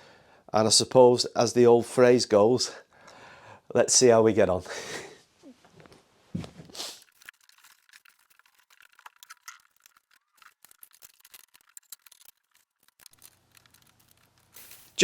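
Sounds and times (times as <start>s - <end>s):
rapid clicking and clattering: 7.0s - 15.0s.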